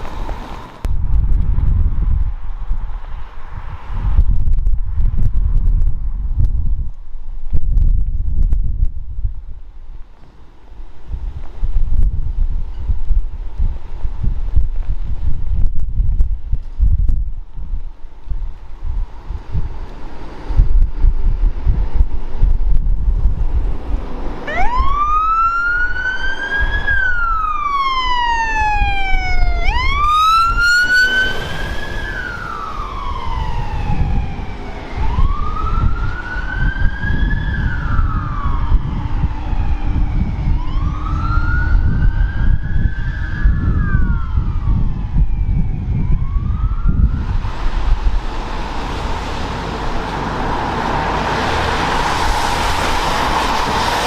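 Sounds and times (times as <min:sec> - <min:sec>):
heavy low rumble: 0:00.0 - 0:25.3, 0:28.5 - 0:53.8
broad rushing noise: 0:18.7 - 0:44.9, 0:46.4 - 0:54.0
fire engine sirens wailing: 0:24.4 - 0:54.0.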